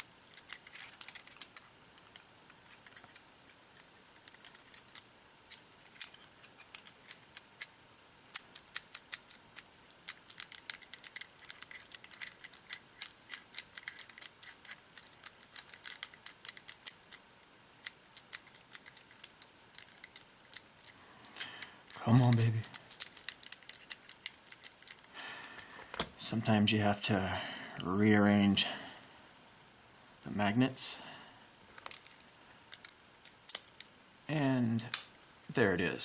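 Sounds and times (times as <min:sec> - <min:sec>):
metallic clicks and taps: 0:34.9 - 0:35.1.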